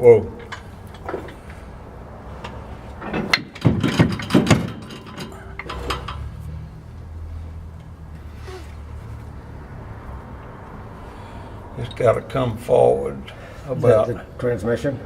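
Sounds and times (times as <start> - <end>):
transmission metal clunks and rattles: 0.0 - 9.3.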